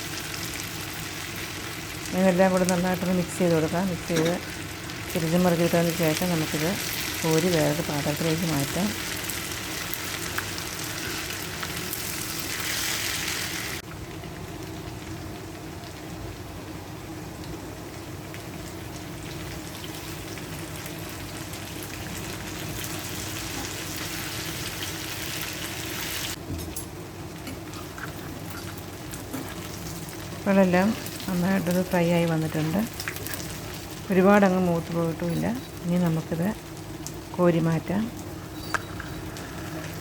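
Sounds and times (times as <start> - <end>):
chicken sizzling in oil: 0.0 - 16.8, 17.6 - 26.4.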